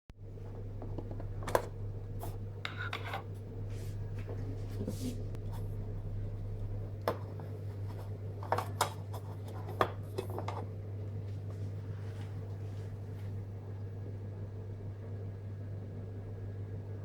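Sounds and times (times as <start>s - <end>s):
steady low hum: 0.2s - 17.0s
handling clicks and rubbing: 7.0s - 10.7s.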